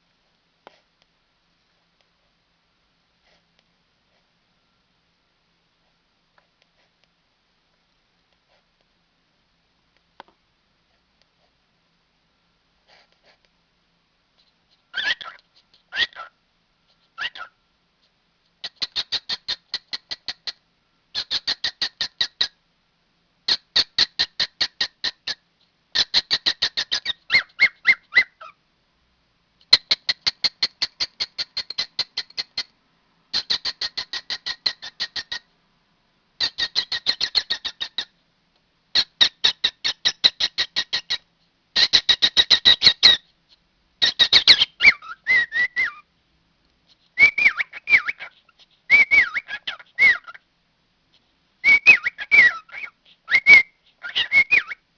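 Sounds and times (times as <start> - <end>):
cockatiel chirping rapidly: 14.9 - 16.4, 17.0 - 17.5, 18.6 - 20.6, 21.2 - 22.6, 23.5 - 25.4, 26.0 - 28.6, 29.7 - 32.7, 33.3 - 35.4, 36.4 - 38.1, 39.0 - 41.2, 41.8 - 43.3, 44.0 - 46.0, 46.9 - 50.4, 51.6 - 54.8.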